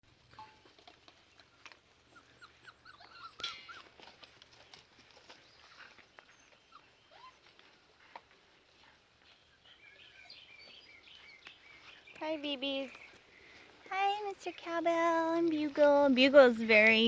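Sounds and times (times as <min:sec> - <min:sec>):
puppies whining and squeaking: 0:01.4 - 0:04.2, 0:05.6 - 0:07.6.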